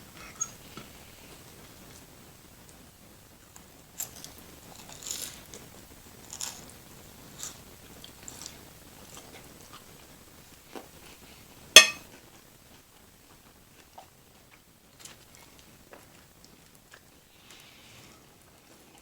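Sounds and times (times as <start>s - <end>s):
person chewing crunchy food: 4.0s - 10.1s.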